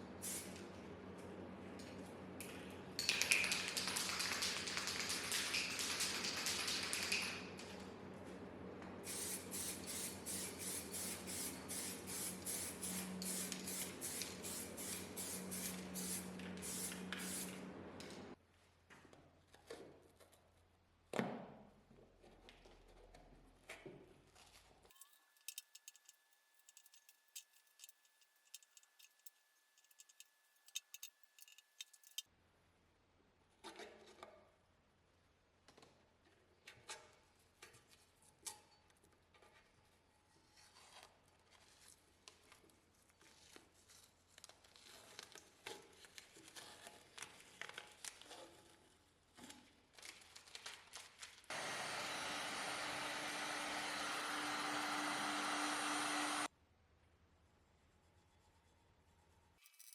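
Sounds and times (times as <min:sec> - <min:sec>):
metal parts and tools clicking: 0:24.9 - 0:32.2, 0:59.6 - 0:59.9.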